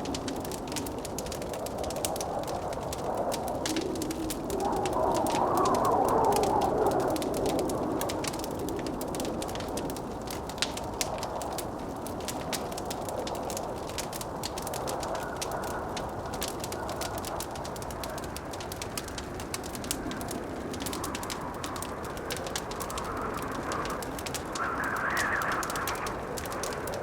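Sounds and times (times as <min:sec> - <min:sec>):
wood fire crackling and popping: 0:00.0 - 0:27.0
blizzard wind rushing: 0:00.1 - 0:10.6, 0:13.6 - 0:27.0.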